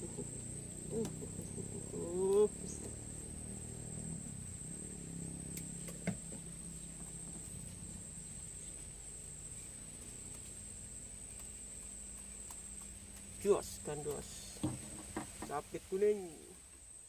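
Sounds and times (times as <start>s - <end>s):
high-pitched insect drone: 0.0s - 15.0s.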